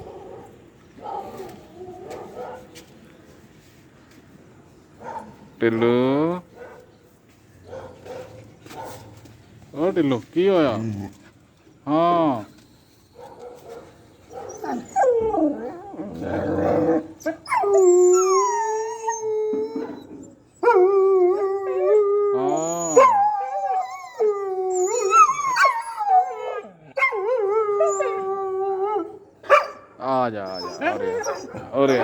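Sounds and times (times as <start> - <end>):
dog howling: 14.4 - 29.2
dog grumbling: 16.0 - 17.2.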